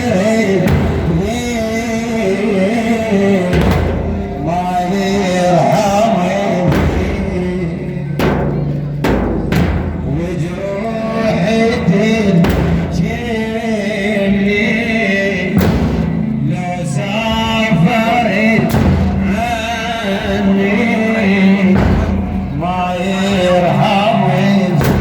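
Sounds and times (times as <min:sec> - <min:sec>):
man singing religious chant: 0:00.0 - 0:25.0
deep thud: 0:00.6 - 0:01.7, 0:03.4 - 0:10.6, 0:11.5 - 0:13.4, 0:15.6 - 0:20.0, 0:21.6 - 0:23.8, 0:24.4 - 0:25.0.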